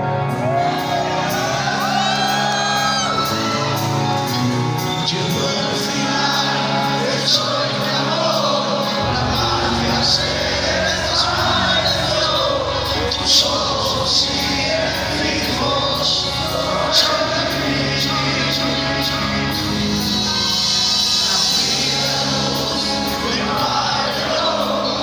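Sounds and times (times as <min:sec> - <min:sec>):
crowd shouting and whooping: 0:00.0 - 0:05.2
deep bass: 0:00.0 - 0:25.0
hard rock band playing live: 0:00.0 - 0:25.0.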